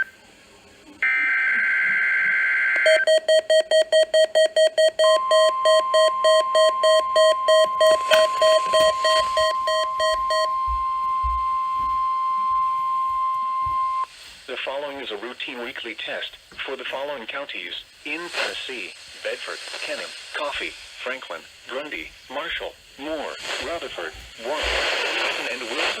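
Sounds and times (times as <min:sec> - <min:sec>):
rapid alarm beeping: 0:02.9 - 0:14.1
steady warning alarm tone: 0:03.0 - 0:14.1.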